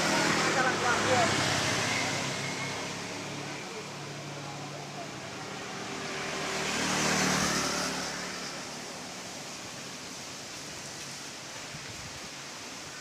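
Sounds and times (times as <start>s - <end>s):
vehicle engine passing: 0.0s - 9.4s.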